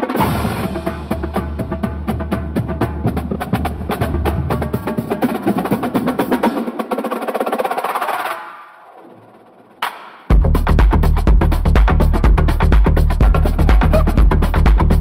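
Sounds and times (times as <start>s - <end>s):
electronic dance music: 9.8s - 15.0s.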